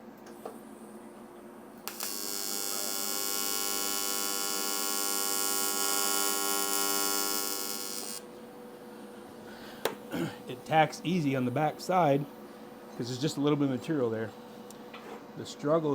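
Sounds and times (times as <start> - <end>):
welding arc buzzing: 1.8 - 8.4.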